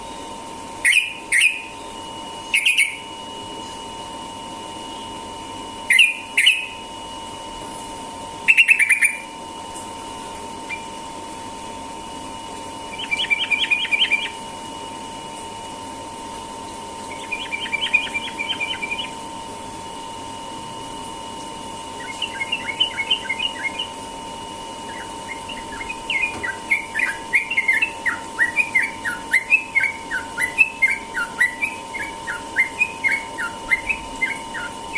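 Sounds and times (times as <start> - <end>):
bulbul chattering song: 0.8 - 1.8, 2.5 - 3.1, 5.9 - 6.8, 8.4 - 9.4, 12.9 - 14.4, 17.0 - 19.2, 21.9 - 24.1, 24.8 - 34.9.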